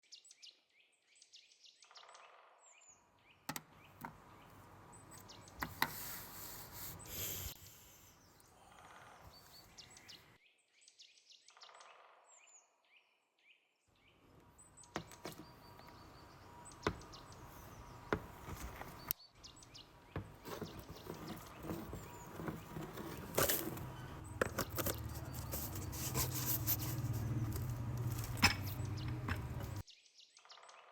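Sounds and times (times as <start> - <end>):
birds chirping: 2.8 - 10.4, 14.0 - 29.9
hand tools and wood clattering: 16.8 - 19.1, 20.1 - 29.8.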